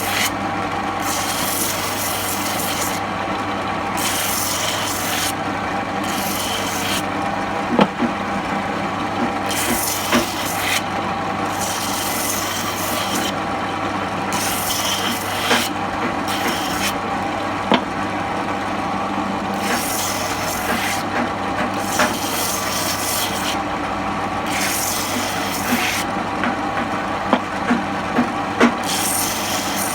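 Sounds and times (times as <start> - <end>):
sharp knocks: 7.7 - 8.2, 17.7 - 18.0, 25.7 - 28.8
grinder rasping into wood: 9.1 - 10.8, 14.3 - 17.0, 19.6 - 23.6, 24.5 - 29.9.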